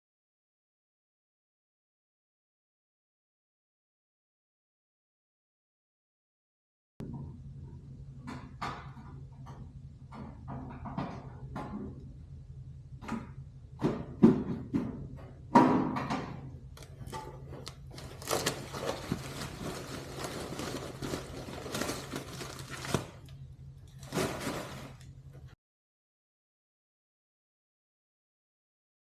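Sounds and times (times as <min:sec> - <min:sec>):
low steady hum: 0:07.0 - 0:25.6
scraping and rustling: 0:16.9 - 0:23.3, 0:23.9 - 0:25.5.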